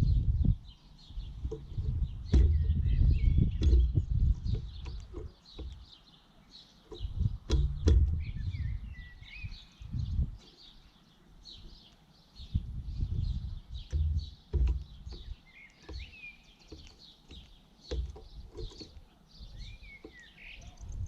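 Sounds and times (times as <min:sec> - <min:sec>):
small birds chirping: 0:00.0 - 0:21.0
loud low rumbling thuds: 0:01.2 - 0:05.8, 0:07.0 - 0:09.0, 0:12.6 - 0:15.4.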